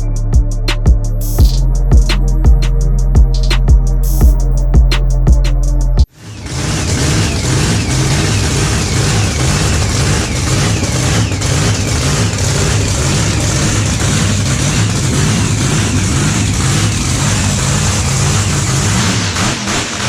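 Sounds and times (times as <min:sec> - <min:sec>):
car engines revving loudly: 0:06.1 - 0:20.0.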